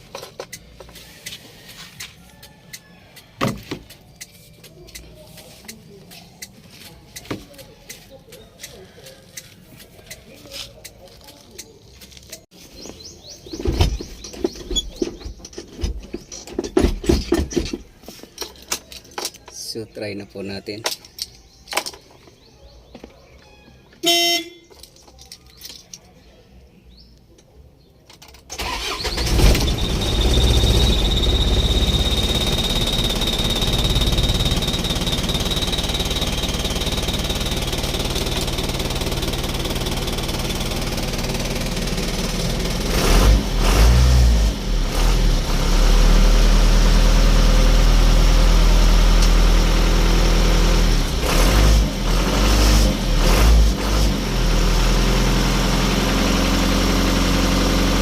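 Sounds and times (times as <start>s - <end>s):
diesel engine starting and running: 28.3s - 58.0s
engine revving: 28.6s - 58.0s.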